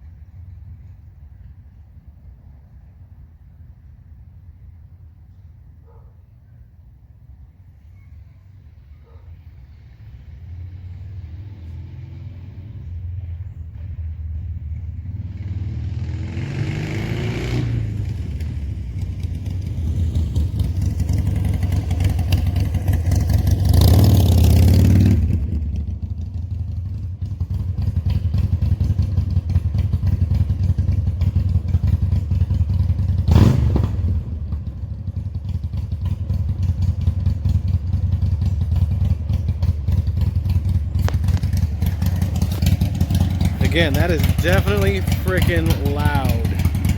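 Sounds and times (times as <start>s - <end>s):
motorcycle engine rumbling and revving: 9.6s - 46.9s.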